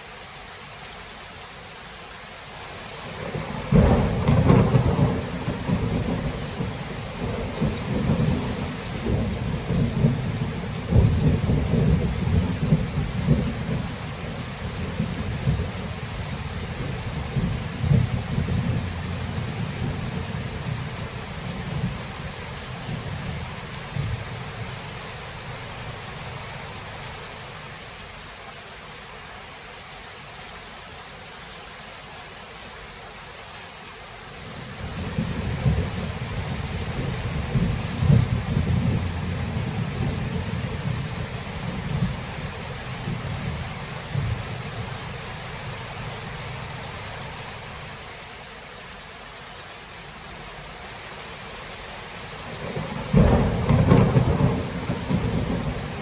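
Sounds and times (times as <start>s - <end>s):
steady rain: 0.0s - 56.0s
thunder rumbling: 3.1s - 27.2s, 34.6s - 47.1s, 52.5s - 56.0s.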